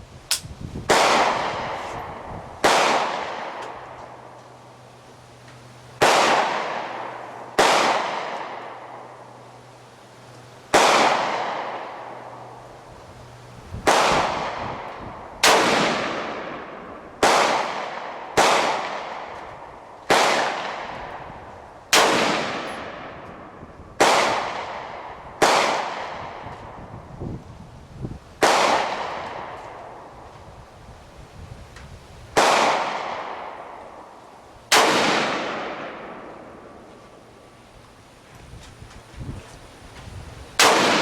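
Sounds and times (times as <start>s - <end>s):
gunshots with echo: 0.9s - 3.7s, 6.0s - 8.6s, 10.7s - 11.9s, 15.4s - 19.4s, 20.1s - 21.0s, 21.9s - 23.2s, 24.0s - 26.4s, 28.4s - 29.6s, 32.4s - 33.6s, 34.7s - 36.8s, 40.6s - 41.0s.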